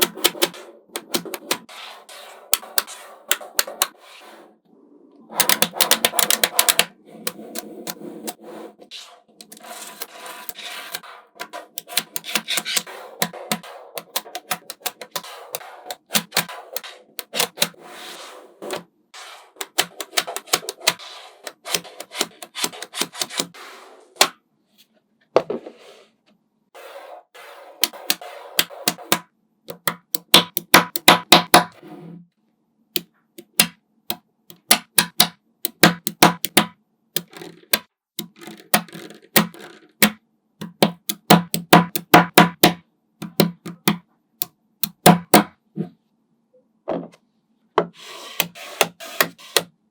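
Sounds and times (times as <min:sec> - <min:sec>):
magnetic balls clicking together: 0:05.4 - 0:08.0, 0:10.5 - 0:17.8, 0:27.8 - 0:31.6, 0:33.0 - 0:44.0, 0:44.8 - 0:45.4.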